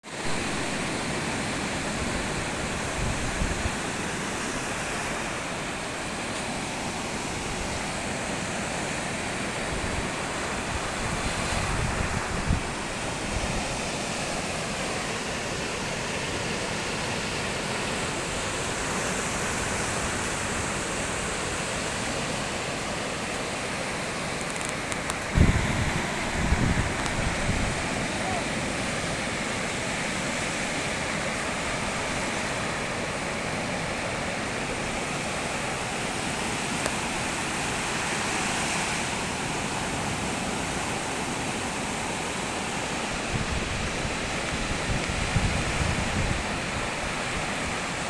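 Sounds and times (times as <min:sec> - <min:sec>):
sea waves washing onto shore: 0:00.0 - 0:48.0
wind bumps on microphone: 0:09.6 - 0:14.0, 0:25.2 - 0:29.4, 0:43.2 - 0:47.8.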